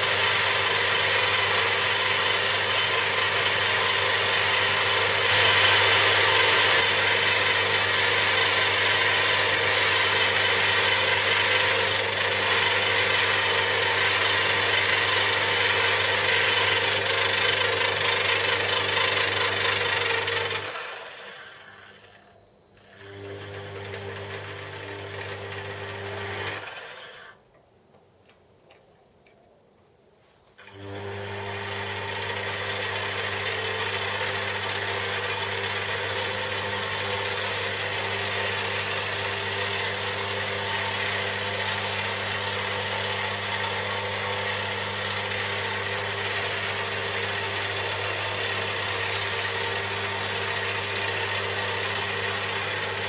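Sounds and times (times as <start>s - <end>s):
lathe motor humming: 0.0s - 22.2s, 30.7s - 53.0s.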